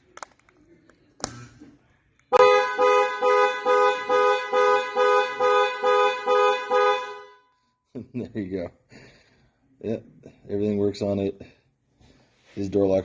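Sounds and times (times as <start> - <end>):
truck horn honking in pulses: 2.3 - 7.6.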